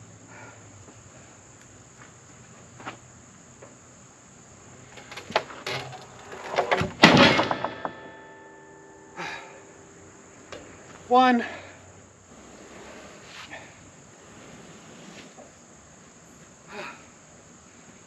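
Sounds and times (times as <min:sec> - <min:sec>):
wood knocking and scraping: 0:04.9 - 0:08.3
loud ringing metal clang: 0:06.9 - 0:10.0.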